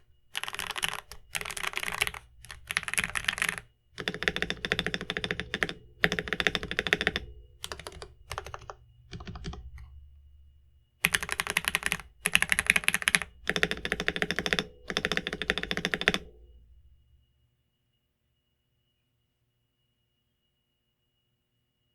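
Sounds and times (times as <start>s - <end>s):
rapid mechanical keyboard typing: 0.0s - 9.9s, 11.0s - 16.5s.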